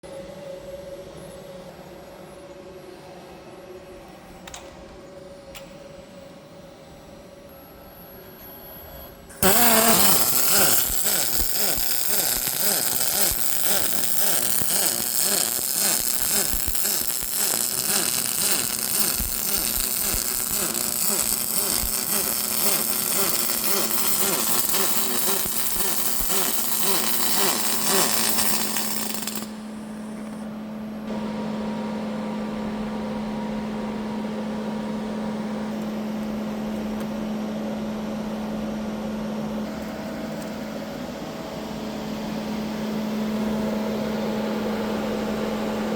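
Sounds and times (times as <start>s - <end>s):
machine hum: 4.9s - 45.9s
welding arc crackling buzz: 9.4s - 30.4s.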